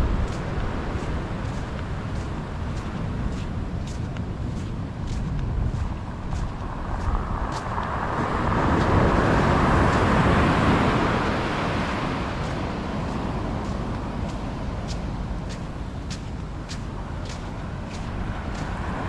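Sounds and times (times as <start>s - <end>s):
road vehicle passing by: 5.7s - 19.0s.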